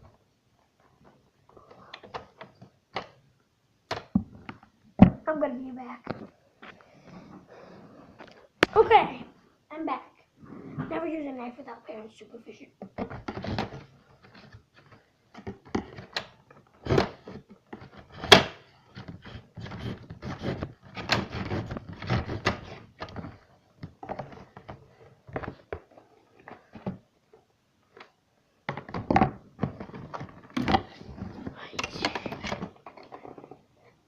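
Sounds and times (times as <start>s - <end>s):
package knocking and rubbing: 16.8s - 27.0s, 28.7s - 33.5s.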